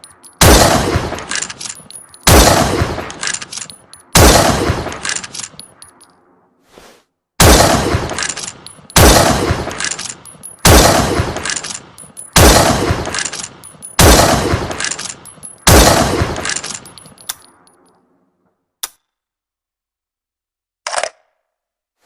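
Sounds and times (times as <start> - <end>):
rifle shots echoing: 0.4 - 5.7, 7.4 - 17.0.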